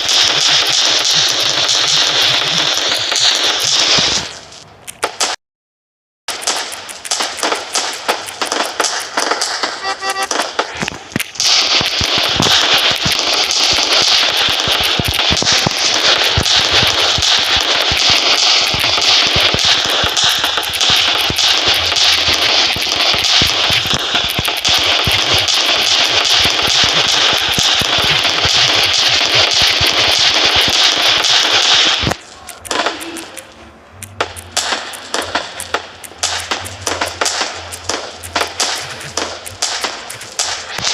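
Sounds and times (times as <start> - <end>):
fireworks crackling and popping: 0.0 - 5.4, 6.3 - 40.9.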